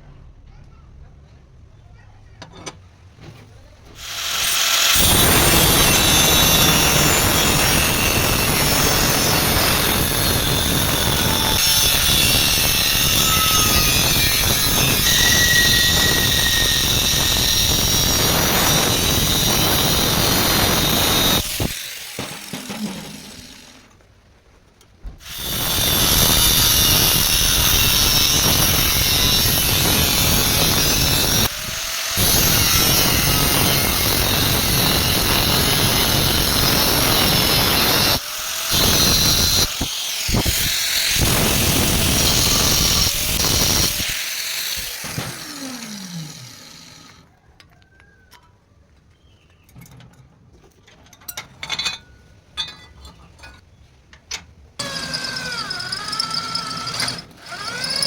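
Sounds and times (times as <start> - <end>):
electric power tool whining: 4.0 - 24.0, 25.2 - 47.2, 54.8 - 58.0.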